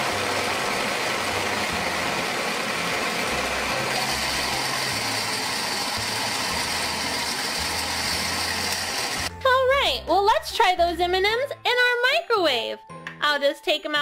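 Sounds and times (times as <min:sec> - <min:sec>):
toy blender motor running: 0:00.0 - 0:09.3
candies rattling in blender: 0:01.3 - 0:09.3.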